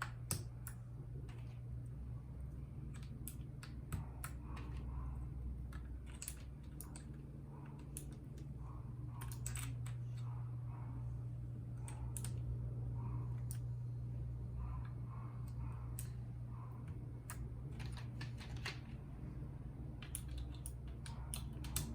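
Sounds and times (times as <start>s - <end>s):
steady low hum: 0.0s - 21.9s
mechanical keyboard key clicks: 20.0s - 21.9s.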